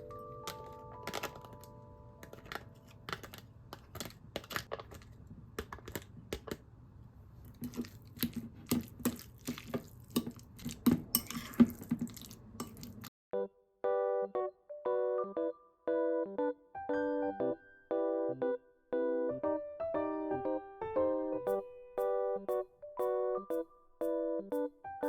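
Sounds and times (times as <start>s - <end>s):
dishes and utensils clinking: 9.5s - 13.0s.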